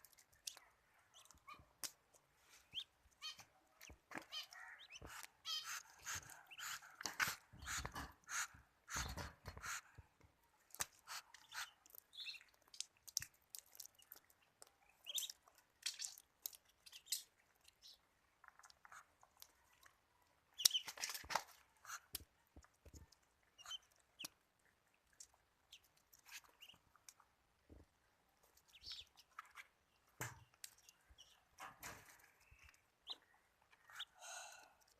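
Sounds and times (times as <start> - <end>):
ducklings pecking and eating: 0.0 - 34.9
ducklings peeping: 4.2 - 9.8, 11.1 - 12.5, 15.0 - 18.0, 20.6 - 21.0, 23.6 - 24.4, 25.7 - 26.8, 28.6 - 29.5, 33.0 - 33.3, 33.9 - 34.2.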